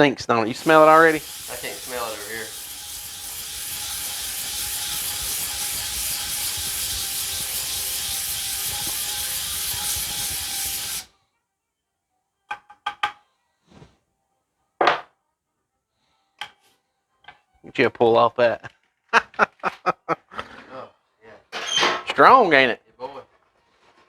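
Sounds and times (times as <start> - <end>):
pressurized spray hissing: 0.5 - 11.1.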